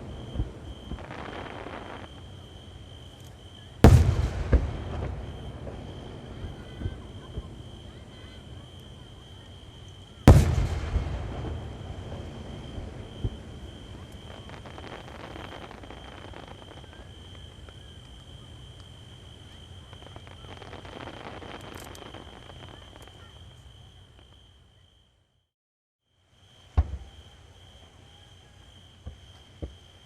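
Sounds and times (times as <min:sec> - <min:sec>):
faint firework crackling: 0:00.0 - 0:25.0, 0:26.4 - 0:30.0
crickets droning: 0:00.0 - 0:25.4, 0:26.1 - 0:30.0
firework shell burst rumbling: 0:03.8 - 0:07.0, 0:10.3 - 0:15.1
sharp firework bang: 0:03.8 - 0:07.5, 0:10.3 - 0:14.5, 0:26.8 - 0:27.2.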